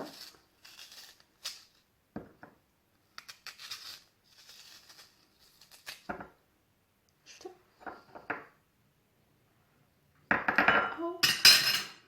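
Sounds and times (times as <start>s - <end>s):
spoon scraping turnip flesh: 0.0s - 1.9s, 3.1s - 6.1s.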